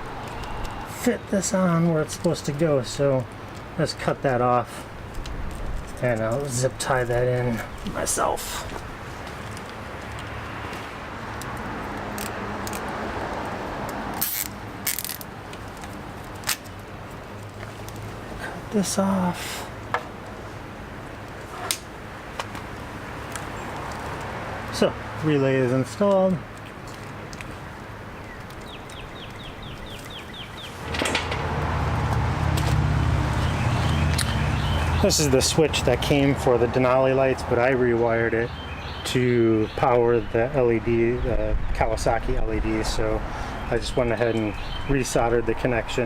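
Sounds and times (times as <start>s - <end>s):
zip tie clicking and rattling: 11.4s - 18.0s
bird chirping: 28.1s - 31.0s, 33.0s - 35.4s, 38.4s - 40.4s, 43.6s - 45.0s.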